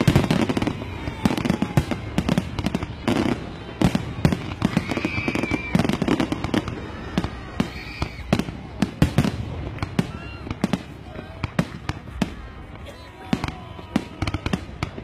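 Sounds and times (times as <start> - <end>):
firework whistle: 0.0 - 9.3
fireworks bangs and crackles: 0.0 - 15.0.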